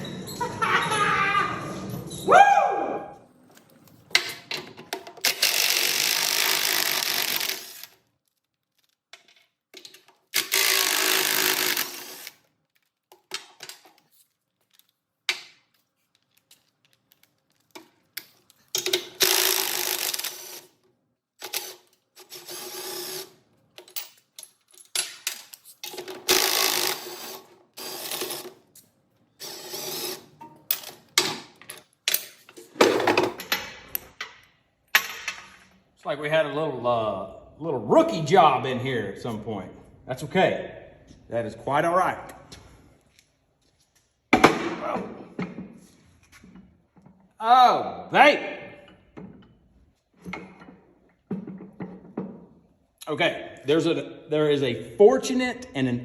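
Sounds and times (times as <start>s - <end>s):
power drill running: 10.4s - 12.4s, 26.3s - 28.5s.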